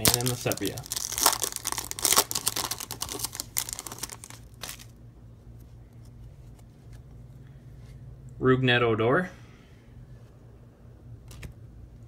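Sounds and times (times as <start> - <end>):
foil wrapper crinkling: 0.0 - 5.0.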